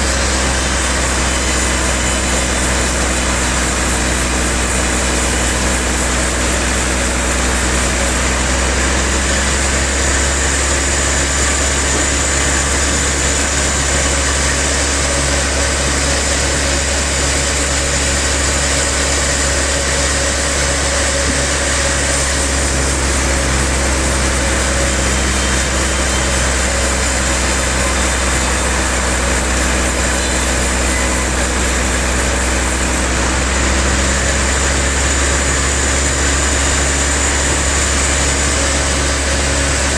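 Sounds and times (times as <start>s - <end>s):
sawmill machinery humming with whine: 0.0s - 39.9s.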